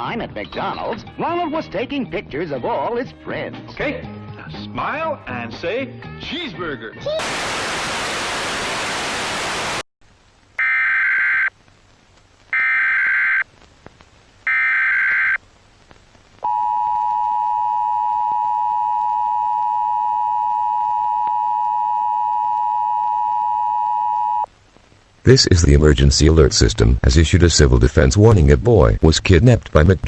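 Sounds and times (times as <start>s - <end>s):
static hiss: 7.2s - 17.5s, 24.4s - 30.0s
data burst tones: 10.6s - 11.5s, 12.5s - 13.4s, 14.5s - 15.4s.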